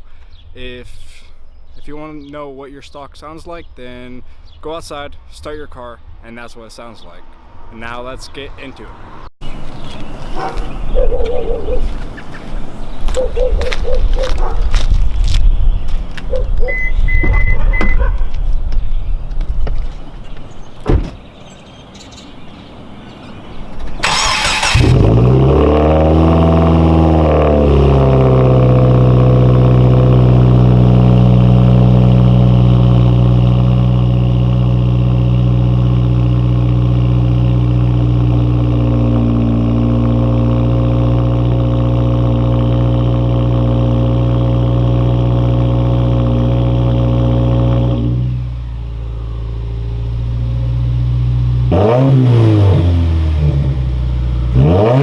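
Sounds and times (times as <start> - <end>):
starter motor cranking: 24.0 - 25.1
car engine revving and idling: 24.0 - 55.0.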